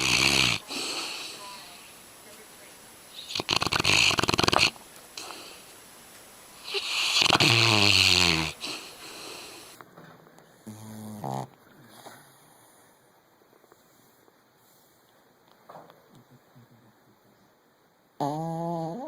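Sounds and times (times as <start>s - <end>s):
dog snoring: 0.0s - 1.9s, 3.1s - 5.7s, 6.6s - 9.8s, 10.6s - 13.0s, 18.2s - 19.0s.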